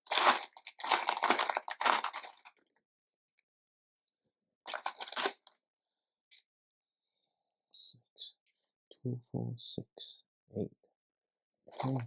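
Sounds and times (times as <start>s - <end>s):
plastic bricks clattering: 0.0s - 2.6s, 4.7s - 5.5s, 11.8s - 12.0s.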